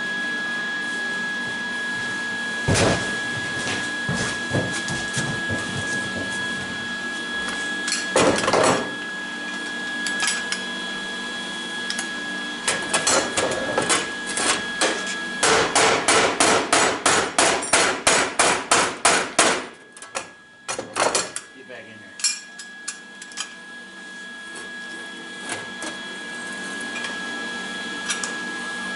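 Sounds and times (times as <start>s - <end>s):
hammer pounding on steel: 15.4s - 19.7s.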